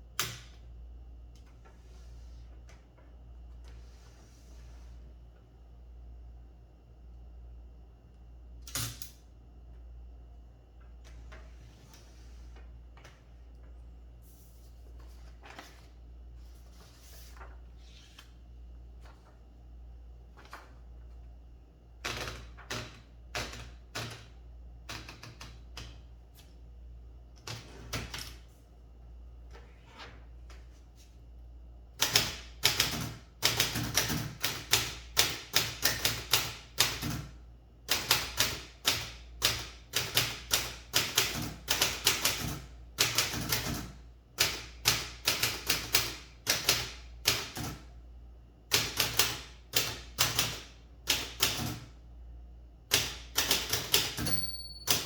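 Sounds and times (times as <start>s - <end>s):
manual typewriter typing: 22.0s - 26.0s, 32.0s - 47.9s, 48.7s - 51.9s, 52.9s - 55.0s.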